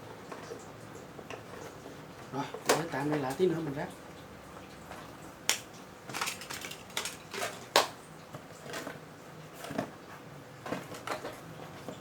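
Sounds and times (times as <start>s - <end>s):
packaging clicks and rustles: 5.5s - 8.0s.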